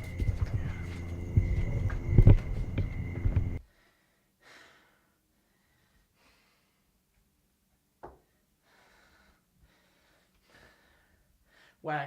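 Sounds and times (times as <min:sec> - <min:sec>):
faint breaths: 0:03.6 - 0:07.0, 0:08.2 - 0:11.8.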